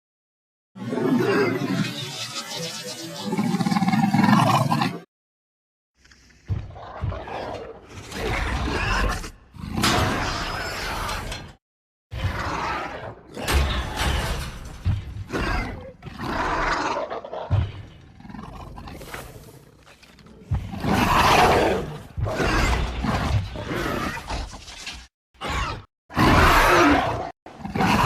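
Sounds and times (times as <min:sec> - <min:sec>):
creature growls snarls and roars: 0:00.8 - 0:05.1, 0:06.5 - 0:28.0.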